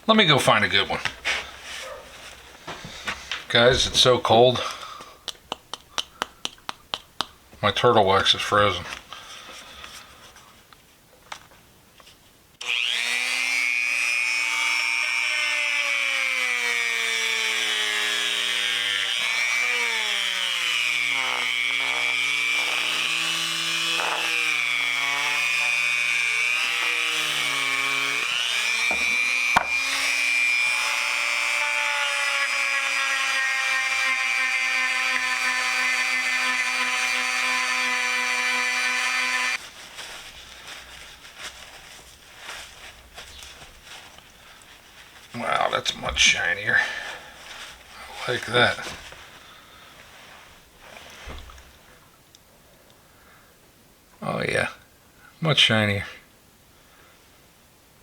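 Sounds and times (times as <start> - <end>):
electric power tool motor polishing: 12.6 - 39.6.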